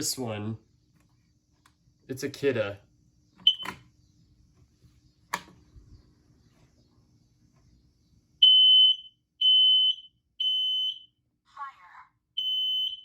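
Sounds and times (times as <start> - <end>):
smoke alarm beeps: 3.4 - 3.8, 8.4 - 11.2, 12.4 - 13.0.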